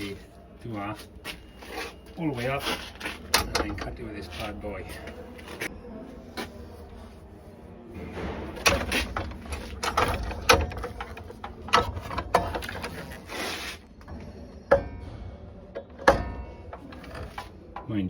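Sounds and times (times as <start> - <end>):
metallic clanks and knocks: 3.1 - 4.3, 8.0 - 13.3, 14.0 - 18.0.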